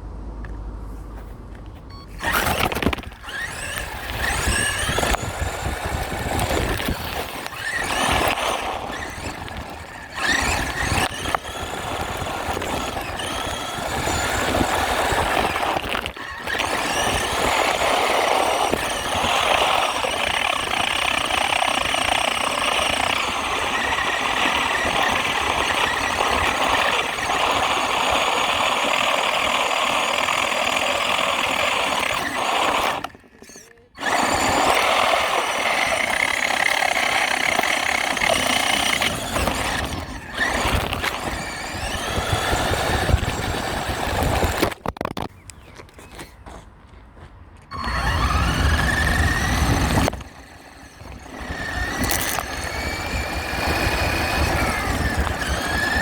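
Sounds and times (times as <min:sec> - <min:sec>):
rc truck motor whining: 0:01.7 - 0:46.4, 0:47.7 - 0:56.0.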